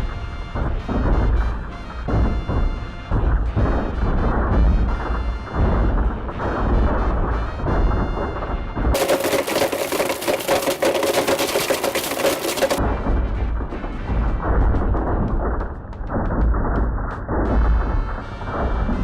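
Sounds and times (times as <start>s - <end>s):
phones crunching in blender: 9.0s - 12.8s.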